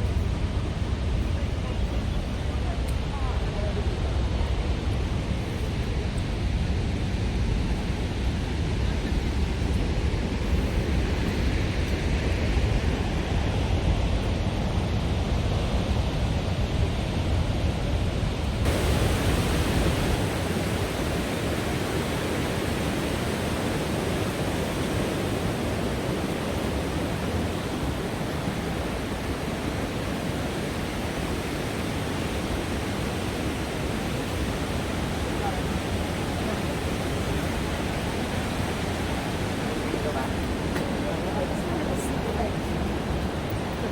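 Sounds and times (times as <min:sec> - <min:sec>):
waterfall rushing: 0:18.5 - 0:43.9.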